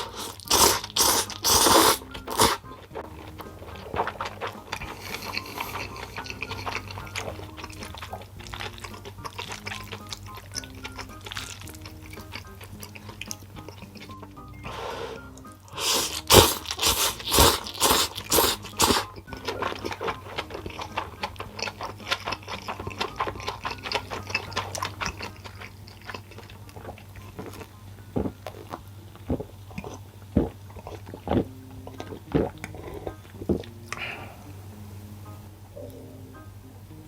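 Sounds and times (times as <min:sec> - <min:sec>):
loud crunching bites: 0:00.0 - 0:02.6, 0:15.7 - 0:27.6
chewing food: 0:00.0 - 0:34.4
background music: 0:00.0 - 0:37.0.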